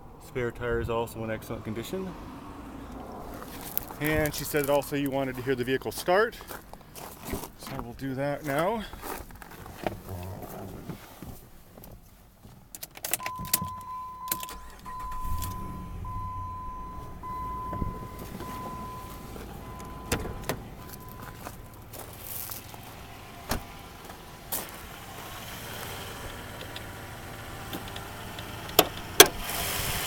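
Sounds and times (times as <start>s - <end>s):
car engine starting and idling: 1.0s - 5.0s, 12.8s - 30.0s
car warning chime beeping: 13.2s - 22.4s.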